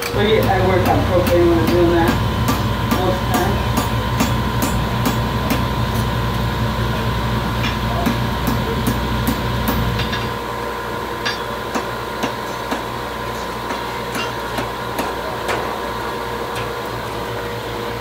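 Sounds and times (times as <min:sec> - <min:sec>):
hammer blows on steel anvil: 0:00.0 - 0:06.1
steady hum: 0:00.0 - 0:18.0.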